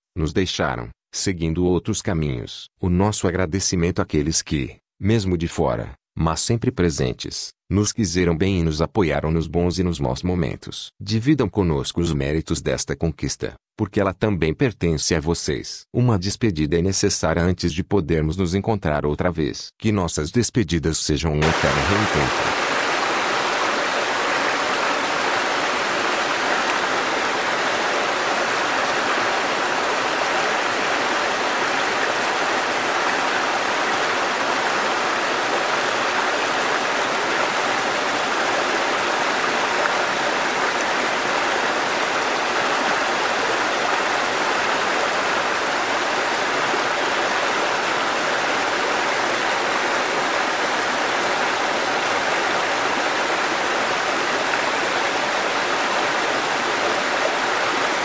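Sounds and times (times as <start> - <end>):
waterfall rushing: 21.4 - 58.0.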